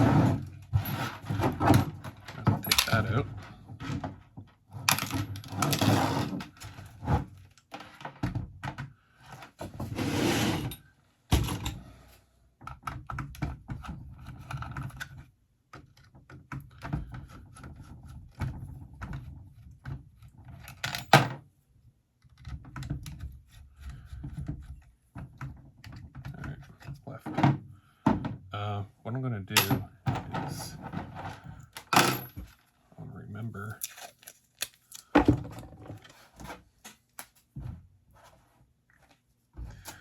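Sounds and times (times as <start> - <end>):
small parts clattering on workbench: 1.4 - 3.2
rustling scrapes: 9.8 - 10.7.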